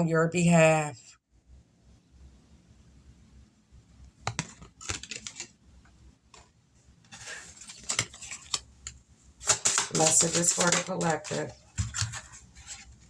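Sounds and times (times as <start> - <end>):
cards shuffling: 4.3 - 5.6, 7.1 - 13.0.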